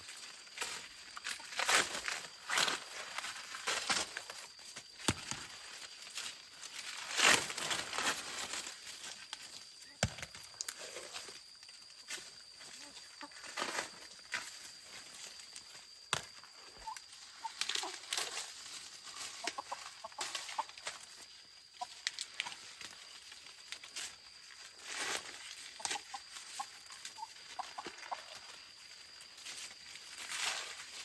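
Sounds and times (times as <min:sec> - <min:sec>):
chickens clucking: 0:16.7 - 0:18.1, 0:19.0 - 0:21.0, 0:25.8 - 0:28.4.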